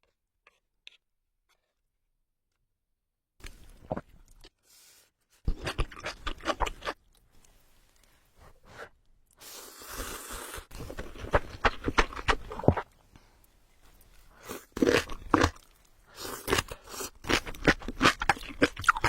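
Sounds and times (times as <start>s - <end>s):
crunchy chewing: 10.7s - 19.0s.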